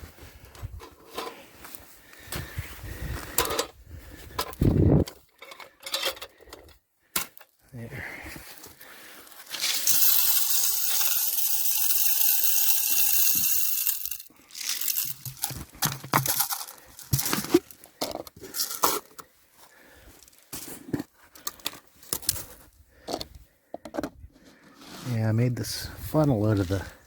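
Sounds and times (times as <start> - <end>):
birdseed pouring through funnel: 9.3 - 17.8
can and feeder clicks and knocks: 9.5 - 19.2.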